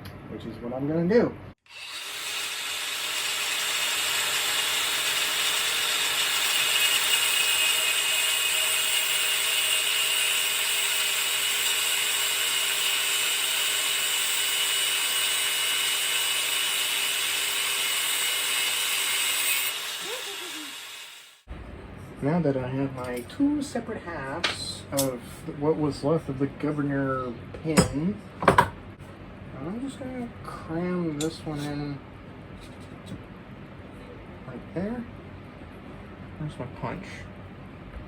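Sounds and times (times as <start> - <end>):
power cutting tool cutting metal: 1.7 - 21.5.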